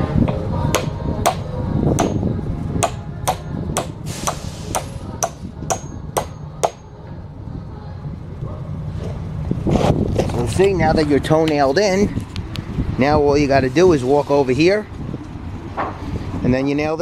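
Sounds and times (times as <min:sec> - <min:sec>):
hammer striking nails into wood: 0:02.0 - 0:02.2, 0:02.8 - 0:06.8.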